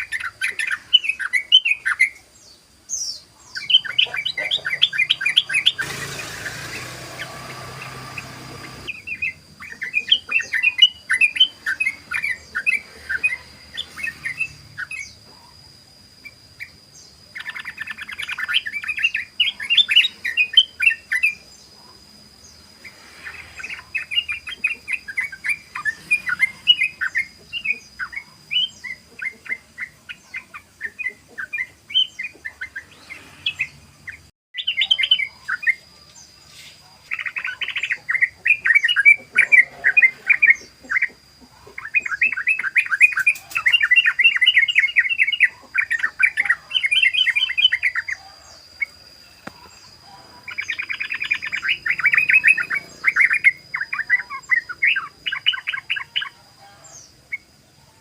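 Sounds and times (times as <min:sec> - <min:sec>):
bird chattering rapid chirps: 0:03.5 - 0:15.6, 0:49.6 - 0:56.4.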